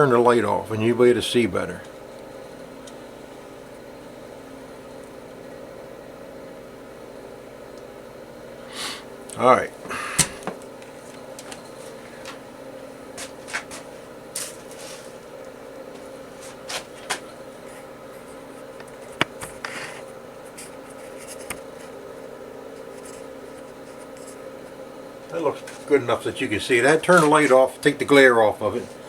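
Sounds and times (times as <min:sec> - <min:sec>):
low shop hum: 0:00.0 - 0:29.0.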